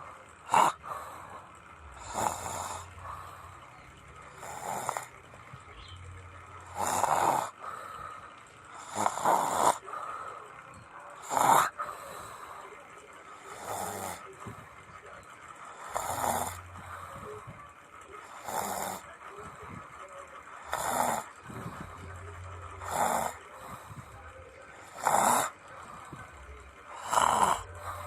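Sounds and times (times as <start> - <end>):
person snoring: 0.5 - 1.4, 2.0 - 3.5, 4.3 - 5.2, 6.6 - 10.2, 11.2 - 12.6, 13.5 - 14.4, 15.7 - 17.4, 18.2 - 19.1, 20.6 - 22.0, 22.7 - 24.1, 24.8 - 26.1, 26.9 - 28.0.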